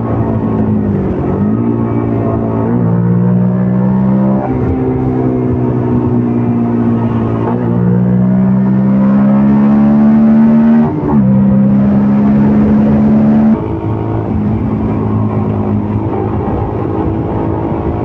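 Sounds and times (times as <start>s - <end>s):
motorcycle engine accelerating: 0.0s - 18.0s.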